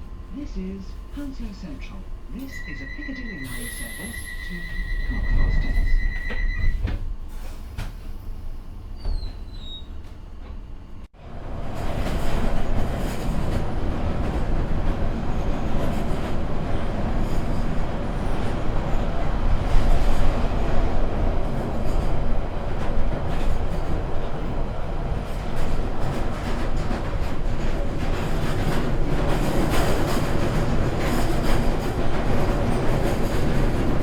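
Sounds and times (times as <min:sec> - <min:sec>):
train wheels rumbling on rails: 0:00.3 - 0:34.0
high-pitched wheel squeal: 0:02.5 - 0:06.8.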